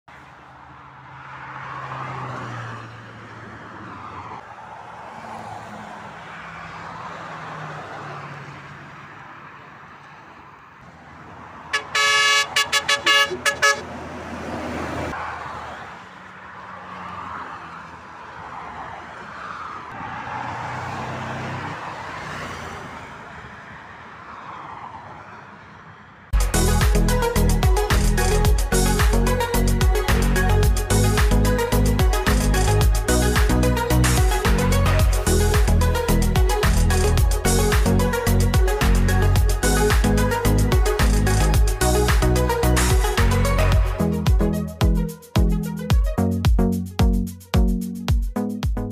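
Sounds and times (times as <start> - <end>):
motorway traffic passing: 0.1 - 48.9
vehicle horn blasts: 11.7 - 13.9
heavy vehicle engine drone: 11.7 - 15.1, 26.3 - 45.8.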